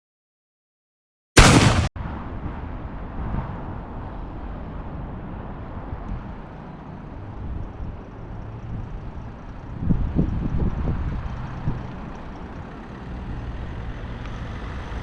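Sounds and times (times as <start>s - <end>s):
loud burst of noise: 1.4s - 2.4s
vehicle low rumble: 1.6s - 15.0s.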